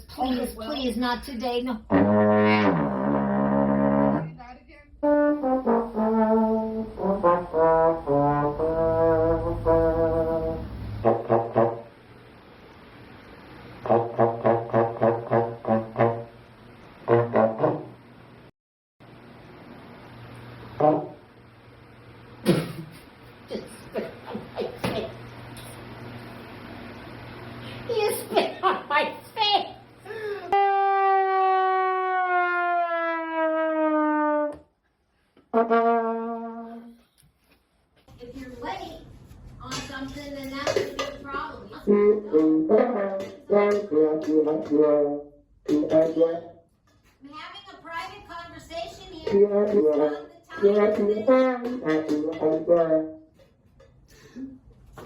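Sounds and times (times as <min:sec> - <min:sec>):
brass instrument playing a tune: 0:01.9 - 0:04.4, 0:05.0 - 0:12.0, 0:13.8 - 0:16.4, 0:17.0 - 0:18.0, 0:20.8 - 0:21.2, 0:30.5 - 0:34.6, 0:35.5 - 0:37.0, 0:41.8 - 0:46.5, 0:49.3 - 0:53.2
low held brass horn note: 0:05.0 - 0:11.9, 0:30.6 - 0:34.6.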